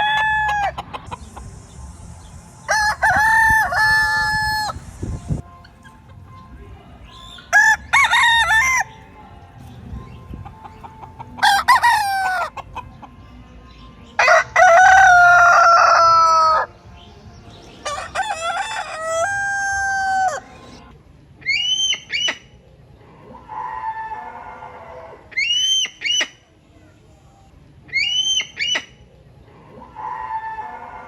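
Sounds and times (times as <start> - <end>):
roosters crowing: 0.0 - 5.4, 7.2 - 9.0, 10.9 - 13.1, 14.1 - 16.8, 17.6 - 20.9, 23.2 - 25.9, 29.7 - 31.0.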